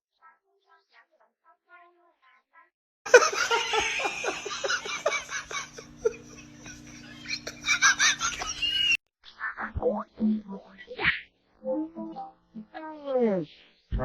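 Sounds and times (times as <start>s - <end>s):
steady low hum: 3.1s - 8.8s
person giggling: 3.1s - 9.0s.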